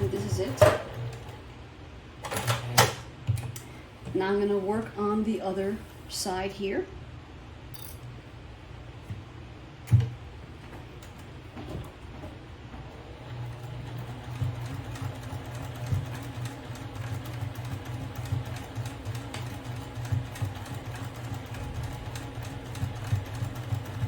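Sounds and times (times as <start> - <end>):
sewing machine motor humming: 0.0 - 1.5, 12.9 - 24.0.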